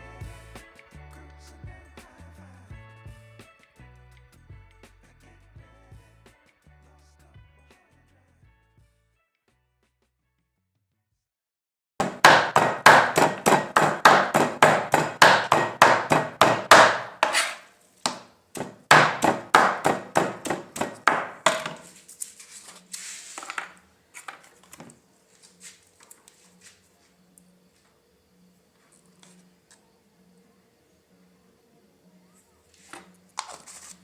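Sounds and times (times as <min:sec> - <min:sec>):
knife chopping on cutting board: 0:12.0 - 0:22.0.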